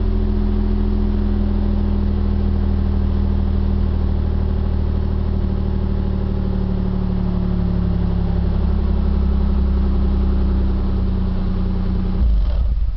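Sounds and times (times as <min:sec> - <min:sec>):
car engine idling: 0:00.0 - 0:12.9.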